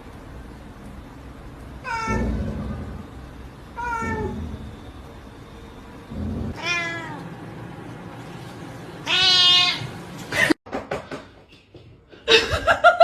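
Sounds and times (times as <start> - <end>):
cat meowing: 1.8 - 2.7, 3.8 - 4.5, 6.5 - 7.2, 9.0 - 9.9.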